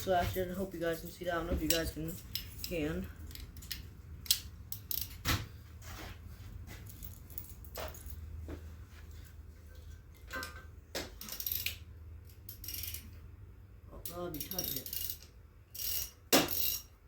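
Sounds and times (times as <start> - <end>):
low steady hum: 0.0 - 17.0
metal tools clinking and rattling: 1.2 - 5.2, 6.7 - 8.4, 10.2 - 13.2, 14.1 - 16.9
ratchet clicks: 2.3 - 5.2, 11.2 - 13.2, 14.0 - 16.9.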